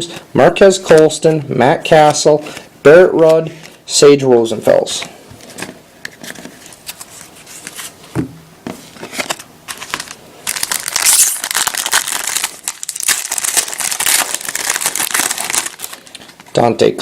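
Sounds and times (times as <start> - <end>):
wrapper crinkling and tearing: 9.1 - 16.6.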